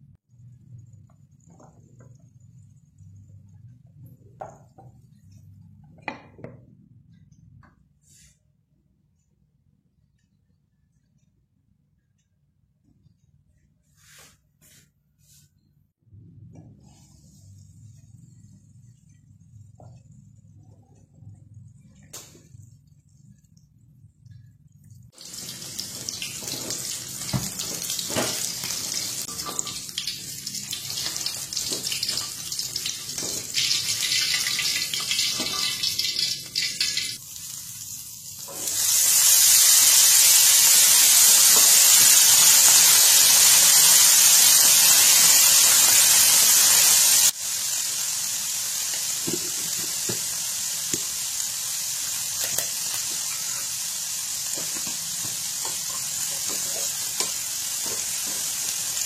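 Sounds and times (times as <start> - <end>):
tap water running into sink: 25.2 - 28.3.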